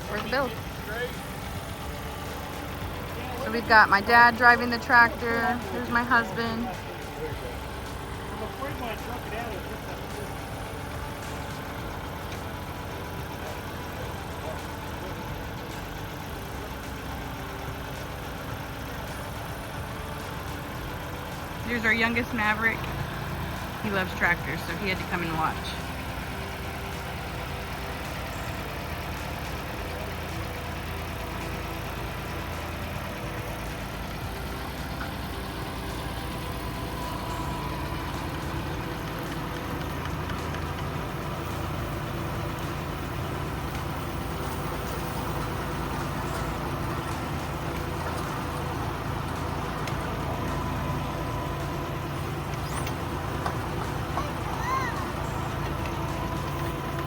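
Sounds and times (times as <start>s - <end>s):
tractor engine running: 0.0s - 57.0s.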